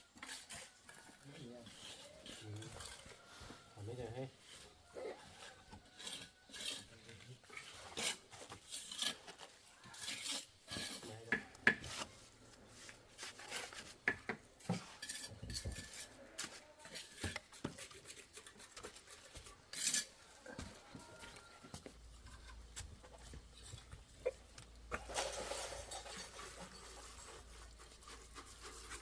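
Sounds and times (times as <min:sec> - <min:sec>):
hard objects clinking and scraping: 0:05.4 - 0:11.2, 0:14.7 - 0:16.2, 0:16.9 - 0:21.5, 0:22.1 - 0:29.0.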